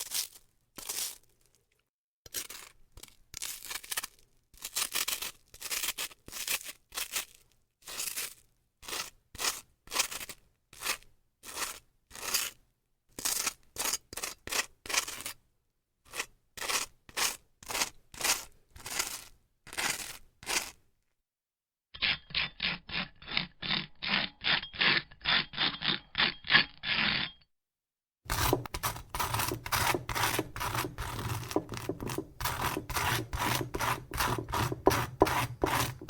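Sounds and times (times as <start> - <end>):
butter knife scraping toast: 28.3 - 36.0.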